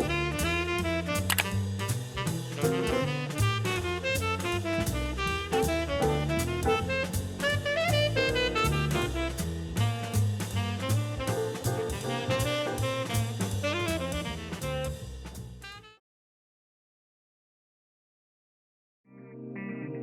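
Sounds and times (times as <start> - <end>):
saxophone melody: 0.0 - 10.0, 10.6 - 15.0
bass: 0.0 - 16.0
drums with steady beat: 0.0 - 16.0.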